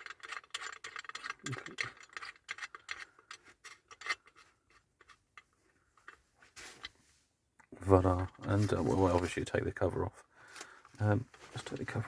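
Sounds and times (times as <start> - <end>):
metal shovel parts clicking and rattling: 0.0 - 7.0.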